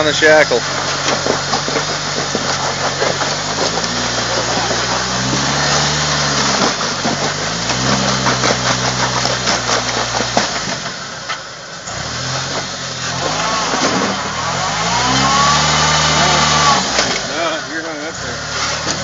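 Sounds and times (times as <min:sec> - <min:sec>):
vehicle engine revving in low gear: 0:00.0 - 0:19.0
tyres and chassis knocking on rock: 0:00.6 - 0:11.0.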